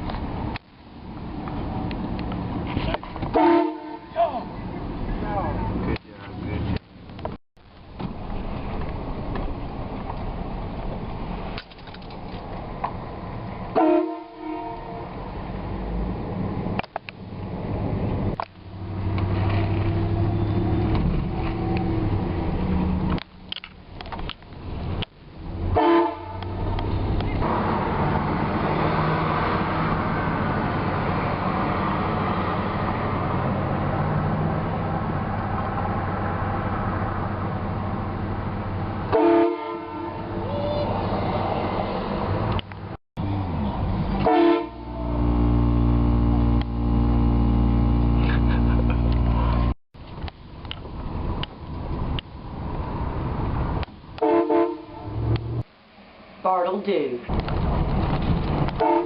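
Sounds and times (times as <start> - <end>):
rushing vehicle noise: 0.0 - 59.0
air horn blasts: 3.3 - 4.1, 13.8 - 15.1, 25.8 - 26.6, 39.1 - 40.3, 44.2 - 49.8, 54.2 - 55.1, 58.8 - 59.0.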